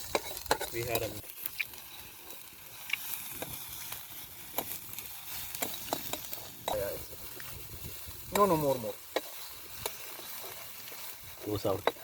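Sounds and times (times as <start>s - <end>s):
spoon scraping a pan: 0.0s - 3.6s, 8.6s - 11.2s
onions sizzling in a pan: 0.0s - 12.0s.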